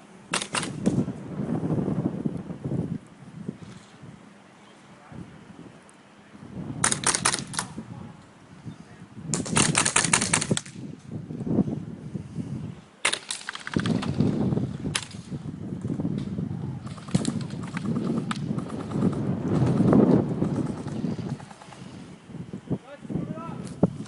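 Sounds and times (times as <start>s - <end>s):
airsoft guns firing bursts: 0.3s - 1.0s, 6.8s - 7.7s, 9.3s - 10.8s, 13.0s - 15.3s, 16.8s - 21.9s.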